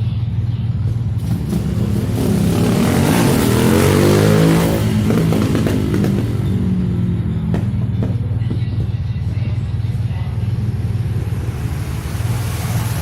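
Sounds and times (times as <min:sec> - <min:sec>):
car engine revving: 0:01.2 - 0:08.3, 0:10.3 - 0:13.0.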